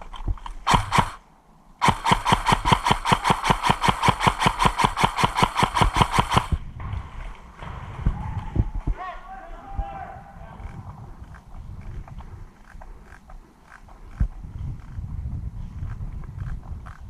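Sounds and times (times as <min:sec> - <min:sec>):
airsoft gun full-auto firing: 0:00.6 - 0:01.2, 0:01.8 - 0:06.6.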